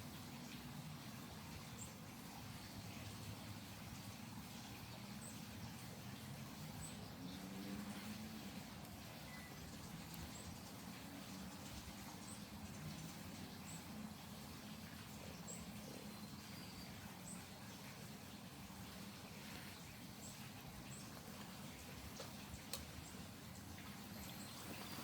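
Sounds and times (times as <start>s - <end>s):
faint high-pitched bird chips: 9.0s - 10.6s, 15.3s - 17.8s.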